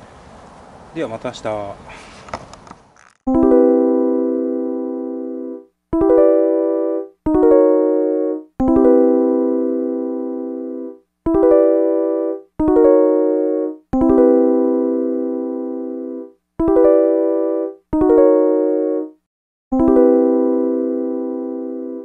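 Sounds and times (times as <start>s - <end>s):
keyboard chords: 3.3s - 22.0s.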